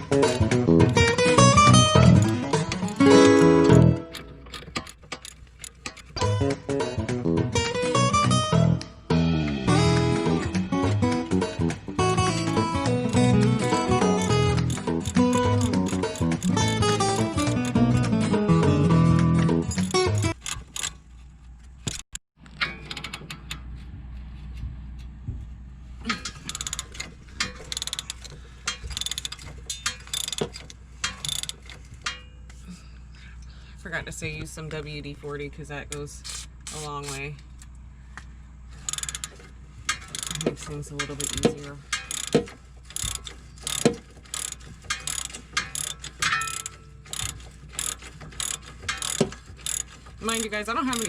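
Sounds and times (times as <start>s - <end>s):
ratchet wrench clicking: 4.1s - 6.3s, 11.6s - 18.1s, 19.6s - 21.0s, 26.1s - 32.3s, 36.2s - 37.7s, 38.8s - 51.0s
sharp metal knocks: 11.5s - 18.0s, 38.8s - 51.0s.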